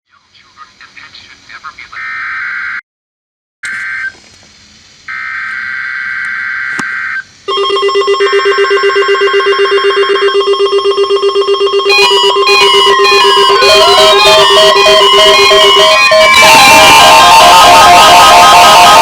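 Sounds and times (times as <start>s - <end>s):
pulsing electronic alert beep: 7.5s - 19.0s.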